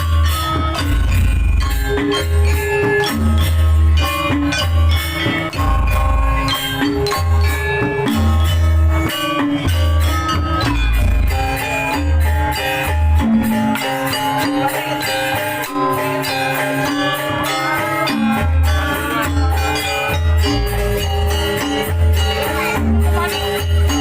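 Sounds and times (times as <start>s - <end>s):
deep drum beats: 0.0s - 14.8s
gamelan music: 0.0s - 24.0s.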